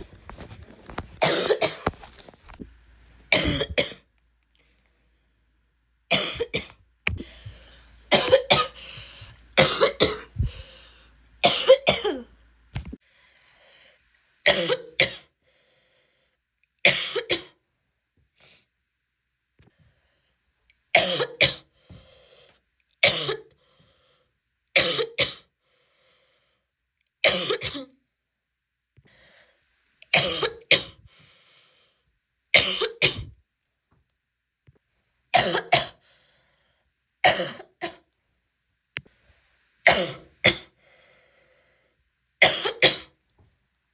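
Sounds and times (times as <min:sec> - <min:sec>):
woman barking cough: 0:01.2 - 0:01.8, 0:03.4 - 0:04.0, 0:08.1 - 0:08.8, 0:09.6 - 0:10.6, 0:11.4 - 0:12.3, 0:16.9 - 0:17.6, 0:21.0 - 0:21.7, 0:23.0 - 0:23.5, 0:27.3 - 0:27.9, 0:30.1 - 0:31.0, 0:32.6 - 0:33.4, 0:35.4 - 0:36.0, 0:37.2 - 0:38.0, 0:42.4 - 0:43.2.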